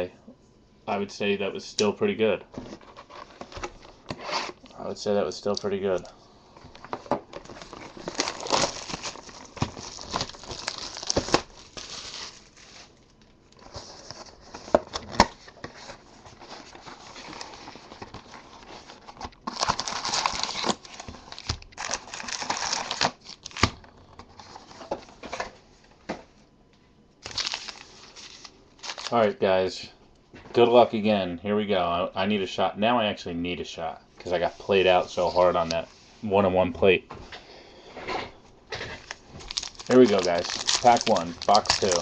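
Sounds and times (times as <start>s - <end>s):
plastic wrapping torn and crinkled: 6.8s - 13.8s, 16.9s - 24.2s, 27.2s - 29.2s, 39.0s - 42.0s.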